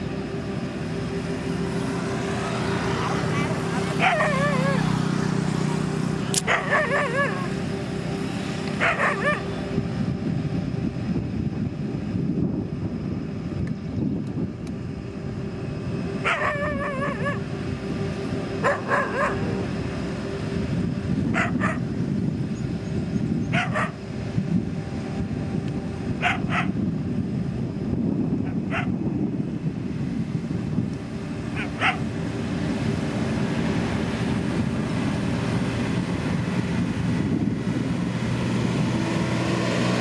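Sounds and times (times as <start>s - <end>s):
diesel engine running: 0.0s - 40.0s
dog barking: 3.3s - 4.8s, 6.4s - 7.5s, 8.8s - 9.4s, 16.2s - 17.4s, 18.6s - 19.6s, 21.3s - 21.8s, 23.5s - 24.0s, 26.2s - 26.7s, 28.7s - 28.9s, 31.6s - 32.0s.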